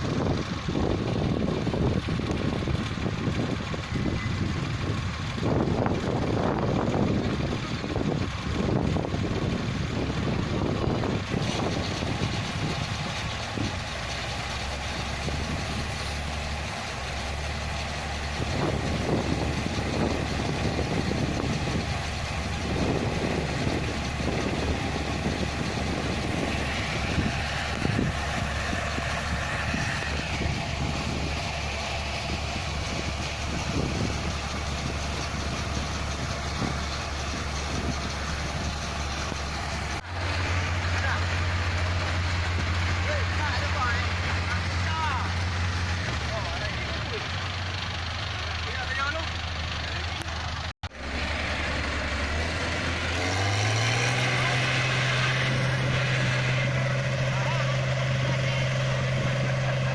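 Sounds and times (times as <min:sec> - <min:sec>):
diesel engine idling: 0:00.0 - 0:59.9.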